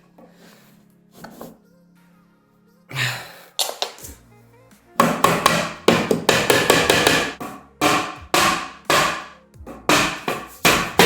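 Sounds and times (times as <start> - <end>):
hammer knocking on wood: 5.0 - 11.0.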